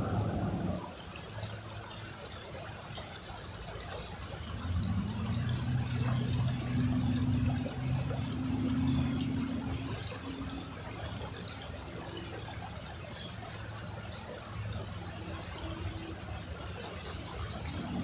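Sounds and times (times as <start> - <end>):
low engine hum: 0.0 - 1.0, 4.3 - 13.0, 13.6 - 18.0
river water washing: 0.0 - 18.0.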